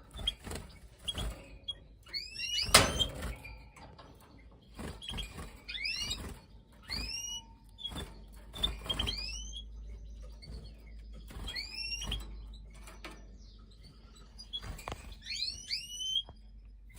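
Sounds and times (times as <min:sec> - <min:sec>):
finch chirp calls: 0:00.0 - 0:16.9.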